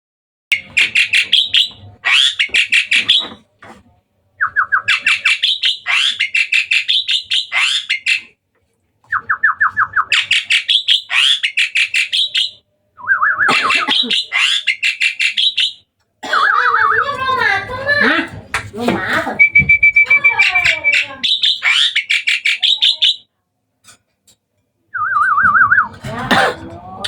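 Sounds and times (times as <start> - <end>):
starling singing: 0.5 - 3.4, 4.4 - 8.4, 9.1 - 17.6, 19.4 - 23.3.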